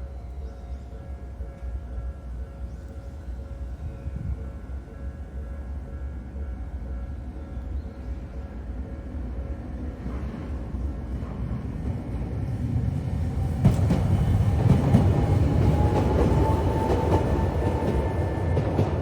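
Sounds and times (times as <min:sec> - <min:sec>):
tram wheels rumbling on rails: 0:06.9 - 0:19.0.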